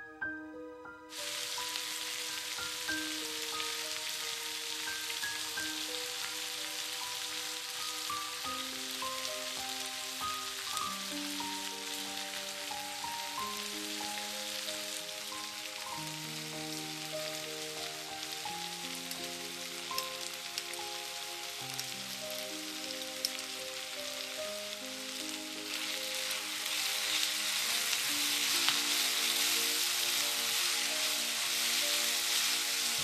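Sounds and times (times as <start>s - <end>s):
gentle background music: 0.0s - 33.0s
food sizzling in a pan: 1.1s - 33.0s.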